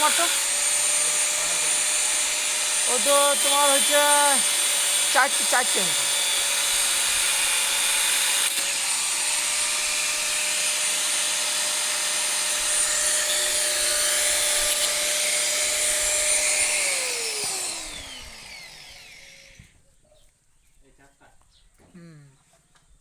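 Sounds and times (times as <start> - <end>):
power tool motor running: 0.0 - 19.7
motor winding down whine: 13.8 - 19.7.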